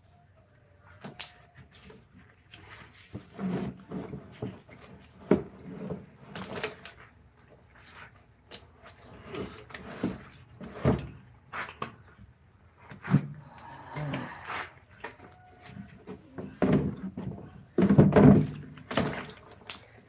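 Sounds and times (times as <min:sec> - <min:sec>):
hard objects knocking and clunking: 0:16.0 - 0:19.2.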